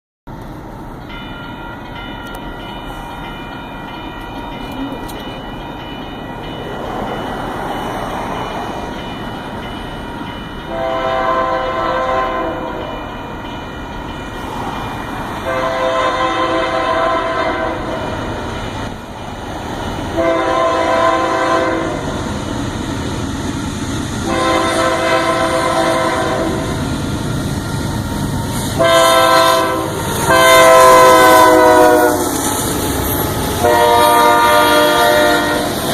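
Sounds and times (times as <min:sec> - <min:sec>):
train air horn blasts: 0:10.7 - 0:12.9, 0:15.4 - 0:18.1, 0:20.2 - 0:22.1, 0:24.2 - 0:26.8, 0:28.5 - 0:32.4, 0:33.6 - 0:35.8.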